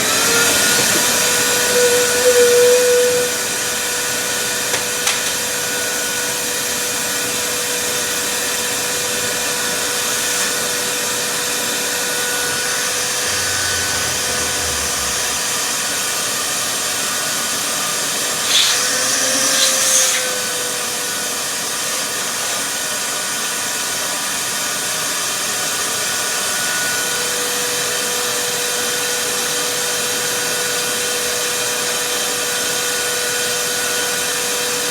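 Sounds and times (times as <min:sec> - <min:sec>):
vacuum cleaner running: 0:00.0 - 0:34.9.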